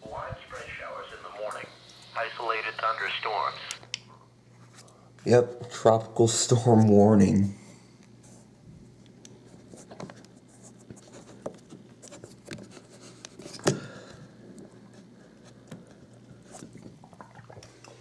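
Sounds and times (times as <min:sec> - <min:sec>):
low steady hum: 0:00.0 - 0:05.2.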